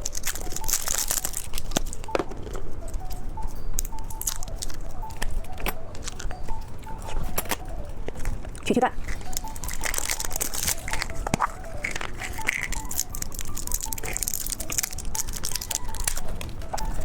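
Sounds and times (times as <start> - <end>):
plastic packaging crinkling and tearing: 0.0 - 17.0.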